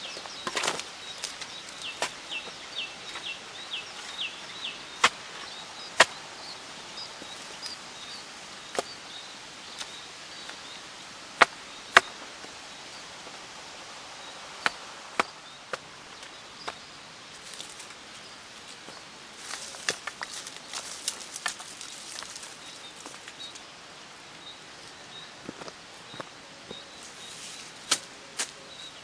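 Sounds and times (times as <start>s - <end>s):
outdoor hiss: 0.0s - 29.0s
sharp knocks or cracks: 27.9s - 28.1s.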